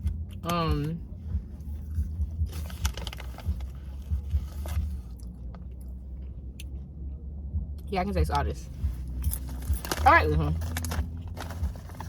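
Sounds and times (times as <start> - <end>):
soft low thuds: 0.0 - 12.0
person chewing crunchy chips: 9.2 - 12.0.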